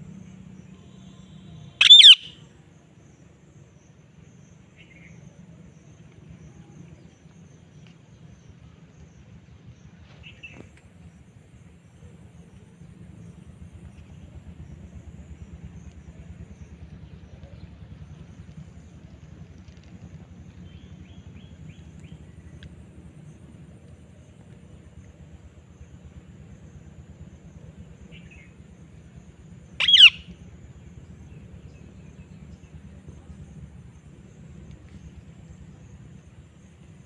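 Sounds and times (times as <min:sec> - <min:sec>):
low background rumble: 0:00.0 - 0:37.0
parrot chirps: 0:01.8 - 0:02.4, 0:29.8 - 0:30.3.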